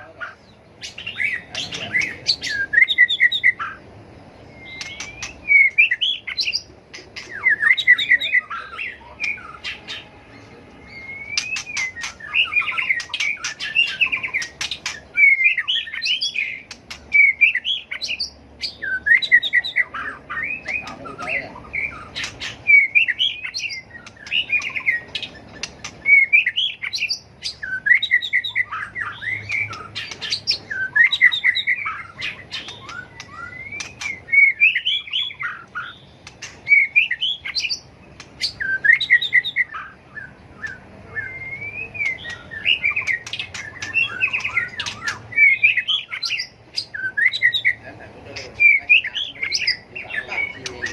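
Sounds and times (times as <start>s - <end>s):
bird singing warbling whistles: 0.8s - 3.8s, 4.4s - 10.0s, 10.8s - 37.8s, 38.4s - 47.8s
sharp bird clicks: 4.6s - 7.4s, 11.2s - 18.2s, 20.6s - 39.6s, 42.0s - 47.6s.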